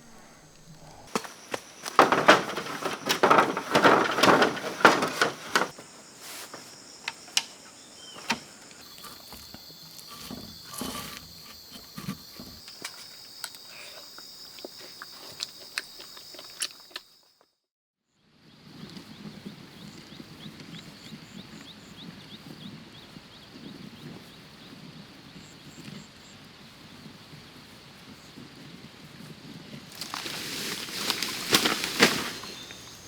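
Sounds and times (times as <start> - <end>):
high insect buzz: 5.8 - 17.2
footsteps crunching through dry leaves: 29.5 - 33.0.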